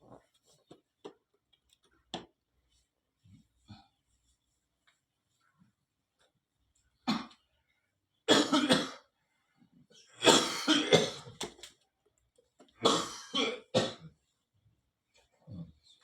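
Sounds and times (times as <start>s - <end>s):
man coughing in fits: 10.2s - 11.4s.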